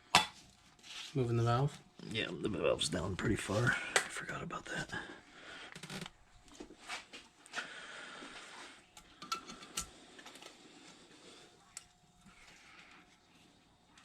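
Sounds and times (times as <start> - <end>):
hand tools clicking and tapping: 9.0 - 10.6.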